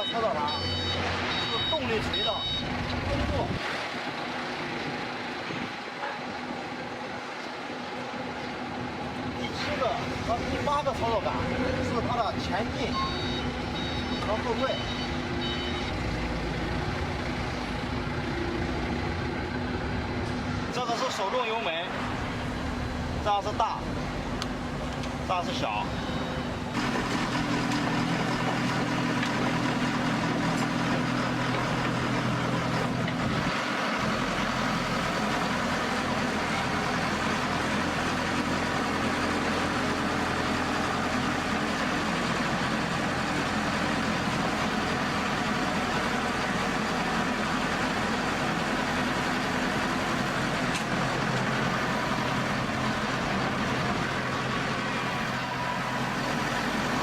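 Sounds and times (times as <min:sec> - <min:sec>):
diesel engine running: 0:00.0 - 0:57.0.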